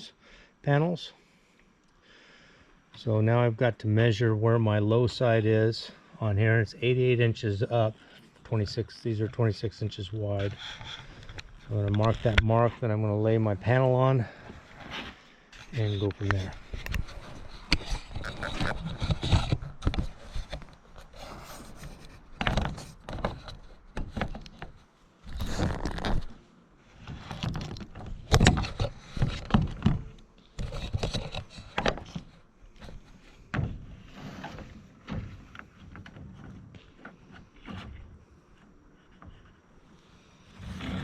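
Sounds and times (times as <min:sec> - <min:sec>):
roofing panel scraping and rattling: 0:27.0 - 0:38.1.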